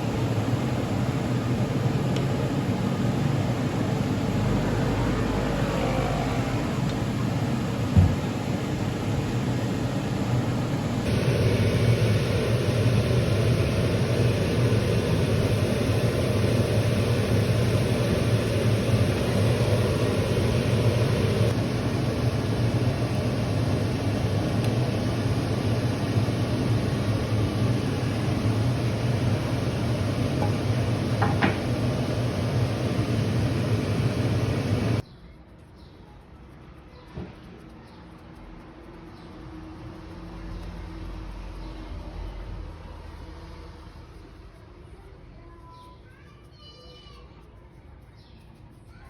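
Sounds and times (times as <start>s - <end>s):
moving vehicle rumble and hiss: 3.9s - 8.8s.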